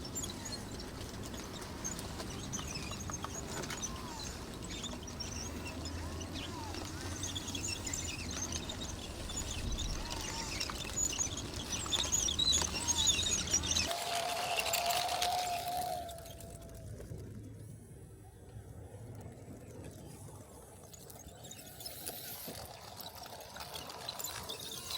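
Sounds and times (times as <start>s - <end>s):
small birds chirping: 0.0s - 13.9s.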